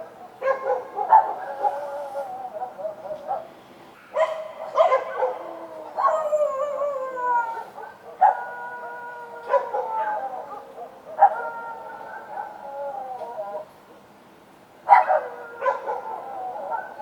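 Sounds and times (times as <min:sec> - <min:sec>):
dogs howling: 0:00.0 - 0:03.5, 0:04.1 - 0:13.8, 0:14.9 - 0:17.0.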